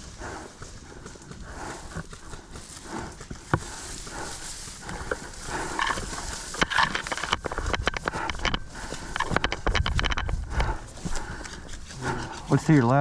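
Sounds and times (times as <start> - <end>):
footsteps: 0.0 - 13.0
gear rattling: 3.6 - 13.0
sharp clicks and knocks: 4.8 - 12.8.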